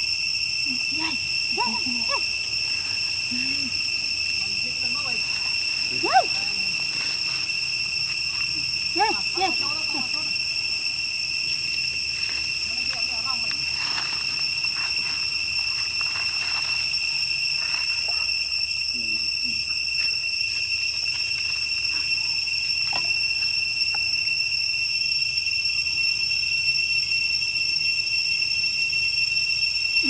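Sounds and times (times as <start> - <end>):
high-pitched insect drone: 0.0 - 30.0.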